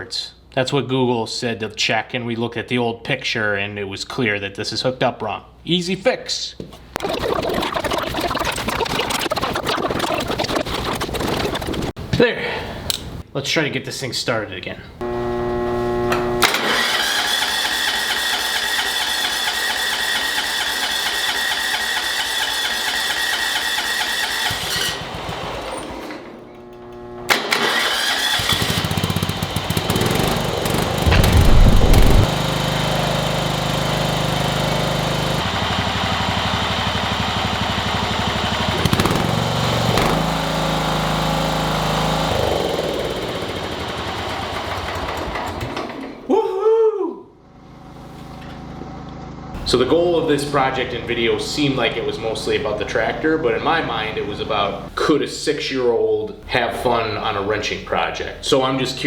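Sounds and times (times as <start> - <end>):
lawn tractor engine running: 15.0 - 26.1, 26.8 - 46.1
starter cranking engine: 16.4 - 26.1, 27.3 - 46.1.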